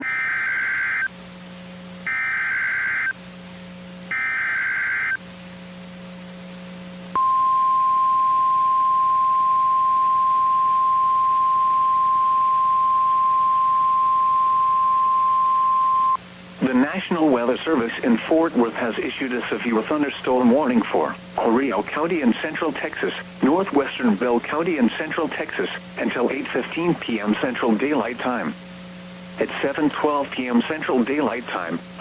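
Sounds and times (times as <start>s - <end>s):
steady warning alarm tone: 0.0s - 1.1s, 2.0s - 3.2s, 4.1s - 5.2s, 7.2s - 16.2s
faint low hum: 0.0s - 32.0s
data tone bursts: 2.1s - 3.2s, 4.1s - 5.2s, 7.2s - 16.8s.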